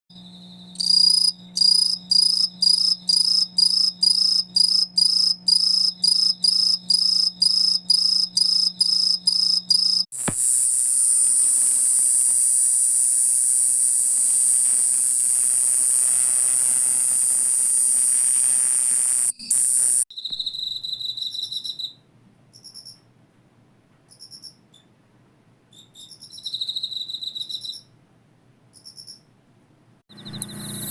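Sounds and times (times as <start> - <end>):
insect fast trill: 0.1 - 22.0, 25.9 - 27.9, 30.1 - 30.9
insect high-pitched shrill song: 0.1 - 22.0, 22.6 - 23.0, 24.1 - 24.6, 25.7 - 27.9, 28.8 - 29.3, 30.1 - 30.9
insect high chirps: 0.2 - 22.0, 24.1 - 24.6, 25.7 - 27.9, 28.8 - 29.2.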